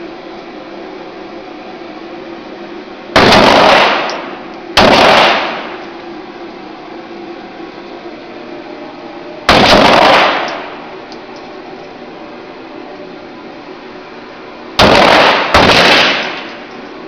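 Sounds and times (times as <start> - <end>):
gunshots with echo: 3.2 - 5.8, 9.5 - 10.7, 14.8 - 16.5.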